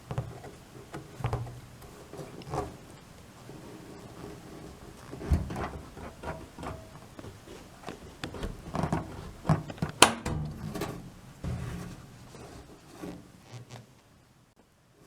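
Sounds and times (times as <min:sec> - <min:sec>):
knocks and clicks of dryer parts: 0:08.2 - 0:12.3.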